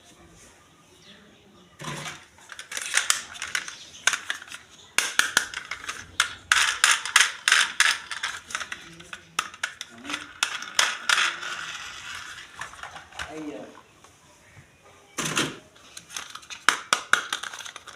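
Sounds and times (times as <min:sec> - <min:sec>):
toy packaging crinkling and clicking: 0:02.0 - 0:13.5, 0:15.8 - 0:17.9.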